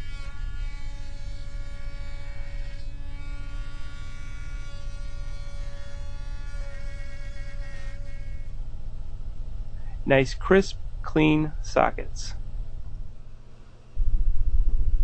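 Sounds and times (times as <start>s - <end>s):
router motor whine: 0.0s - 8.6s.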